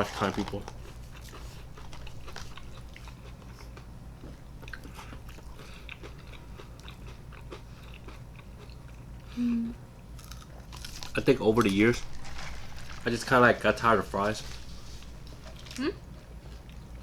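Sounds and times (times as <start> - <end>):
crunchy crackles: 0.0 - 3.5, 10.2 - 15.9
chewing and biting food: 0.0 - 9.3, 10.2 - 17.0.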